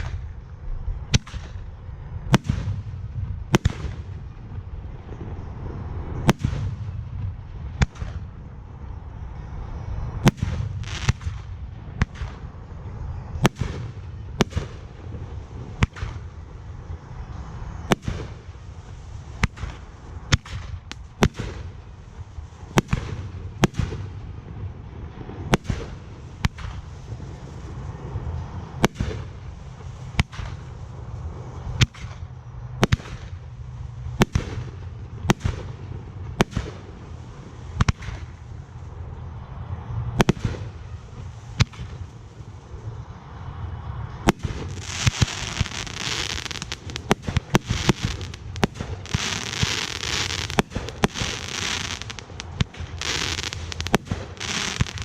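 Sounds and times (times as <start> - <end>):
continuous low rumble: 0.0 - 55.0
fireworks shells bursting: 44.6 - 55.0.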